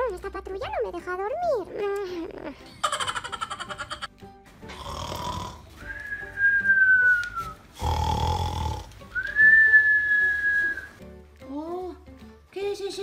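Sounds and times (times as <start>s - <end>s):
music: 0.0s - 13.0s
cartoon snoring with whistle: 7.8s - 8.8s.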